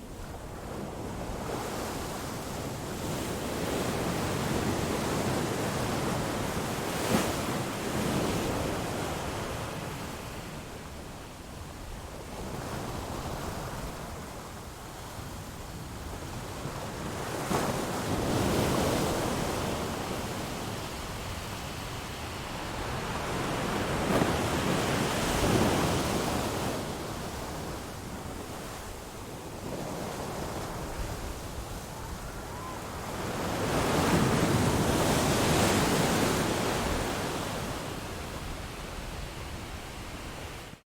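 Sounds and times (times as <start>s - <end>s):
sea waves washing in: 17.4s - 40.8s.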